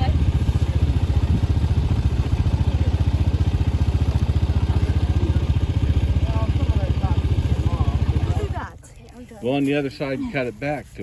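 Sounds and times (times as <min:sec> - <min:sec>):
tractor engine idling: 0:00.0 - 0:11.0.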